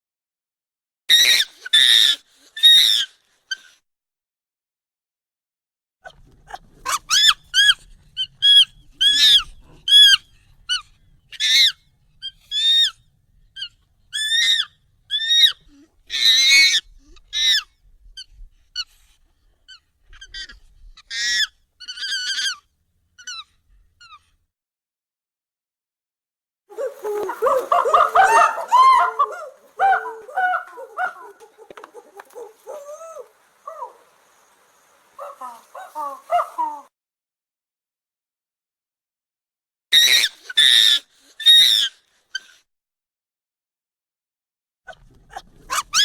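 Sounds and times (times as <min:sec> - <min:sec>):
high squeaky monkey calls: 0:01.1 - 0:03.7, 0:06.8 - 0:13.0, 0:13.6 - 0:18.9, 0:19.7 - 0:24.2, 0:26.7 - 0:34.1, 0:35.2 - 0:36.9, 0:40.0 - 0:42.6, 0:45.7 - 0:46.0.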